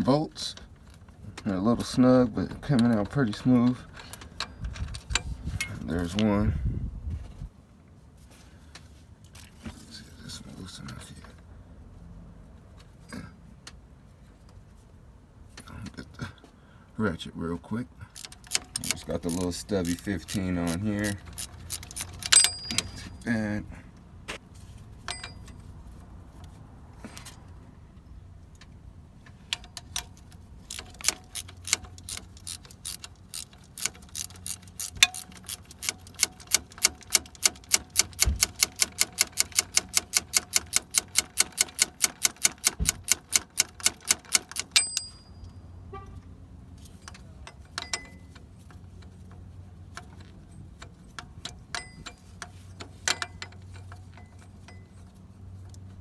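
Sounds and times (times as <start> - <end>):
ratchet wrench clicking: 18.2 - 23.2, 29.6 - 45.2
metallic clicks and clinks: 18.2 - 23.4, 25.0 - 25.7, 29.5 - 45.6, 46.8 - 49.2, 49.9 - 56.0.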